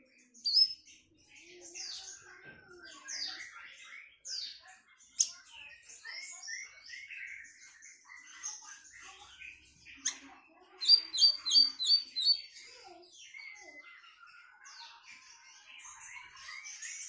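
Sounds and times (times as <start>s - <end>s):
songbird singing: 0.0s - 14.4s
bird twittering: 0.4s - 0.9s, 9.5s - 12.6s.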